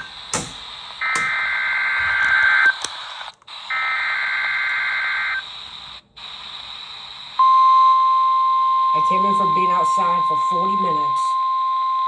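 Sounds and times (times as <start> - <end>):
radio hiss: 0.0 - 7.4.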